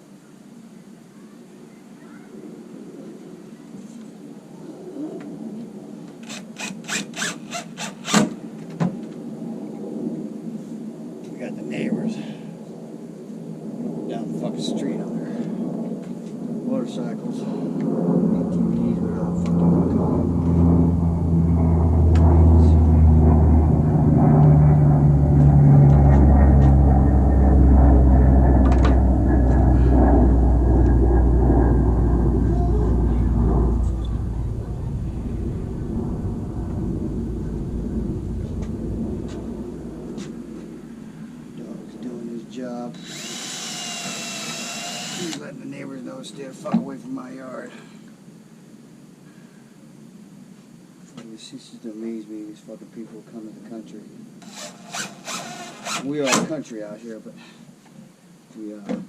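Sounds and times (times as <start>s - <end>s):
off-road motorcycle engines rumbling: 18.2s - 42.4s.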